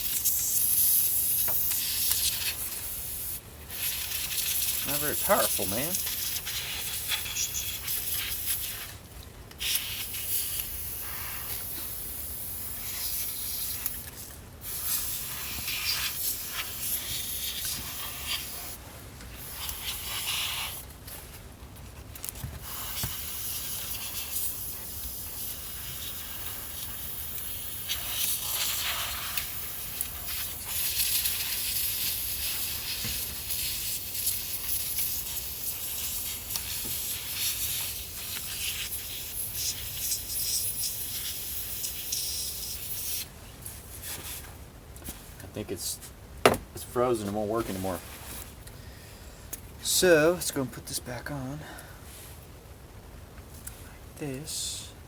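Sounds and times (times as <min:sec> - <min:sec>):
air duster can hissing: 0:00.0 - 0:08.8, 0:09.6 - 0:18.8, 0:19.4 - 0:20.8, 0:22.6 - 0:43.2.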